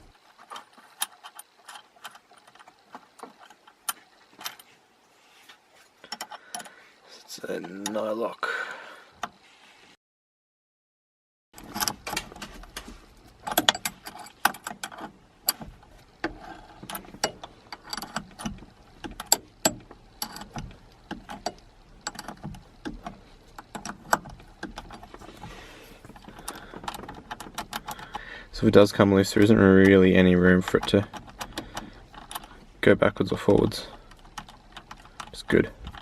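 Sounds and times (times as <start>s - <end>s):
metallic clicks of hand tools: 11.6s - 28.3s, 30.6s - 32.7s.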